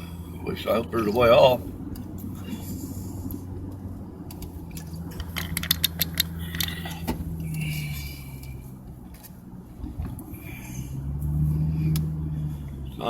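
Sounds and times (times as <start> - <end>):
car engine and road hum: 0.0 - 13.0
light clicks and rattles: 3.2 - 7.7.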